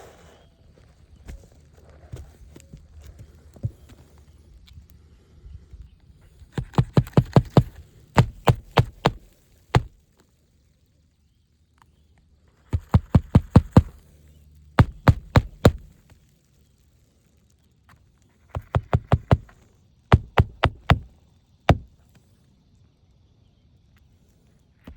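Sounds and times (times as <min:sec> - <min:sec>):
hammer driving roofing nails: 0:06.5 - 0:10.0, 0:12.7 - 0:14.1, 0:14.8 - 0:16.0, 0:18.5 - 0:21.1, 0:21.7 - 0:22.0.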